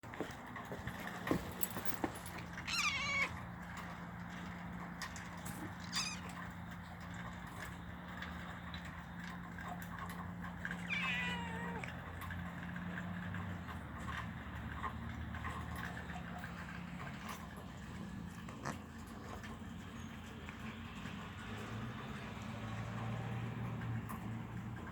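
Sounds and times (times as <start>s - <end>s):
cat meowing: 2.6s - 3.4s, 5.7s - 6.4s, 10.7s - 12.1s.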